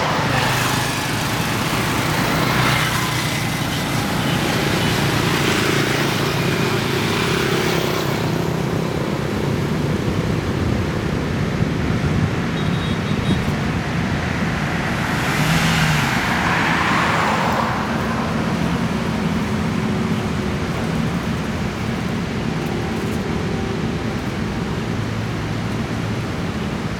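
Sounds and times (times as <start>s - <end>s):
road traffic: 0.0s - 26.9s
vehicle passing close: 13.5s - 21.8s.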